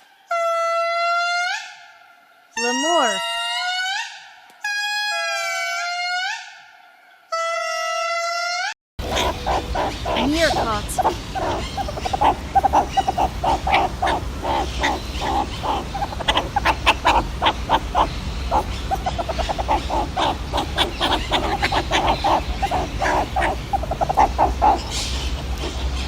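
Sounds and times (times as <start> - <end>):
meerkats calling: 9.0 - 26.0.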